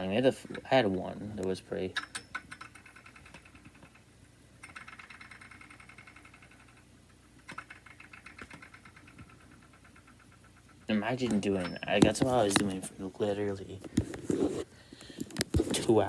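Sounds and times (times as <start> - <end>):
magnet chattering against metal: 2.0 - 12.8.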